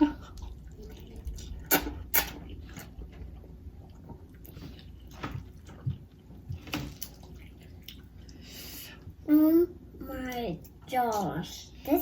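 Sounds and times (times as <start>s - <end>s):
person chewing noodles: 0.0s - 9.1s.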